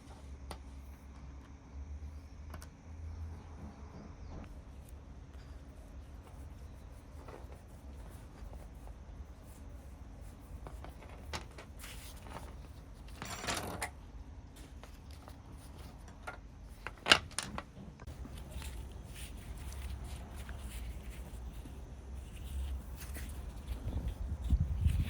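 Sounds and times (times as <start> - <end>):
scraping rustle: 4.6 - 14.0, 16.7 - 25.0.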